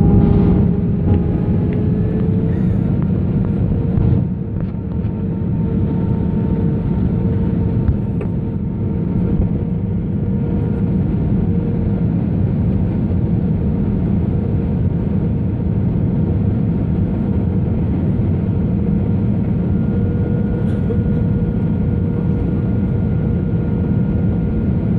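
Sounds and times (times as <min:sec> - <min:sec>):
faint steady whine: 0:00.0 - 0:09.6
aircraft engines droning: 0:00.0 - 0:24.9.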